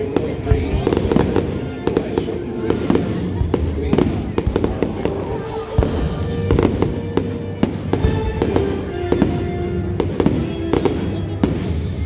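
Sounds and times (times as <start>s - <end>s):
music playing: 4.4s - 8.8s.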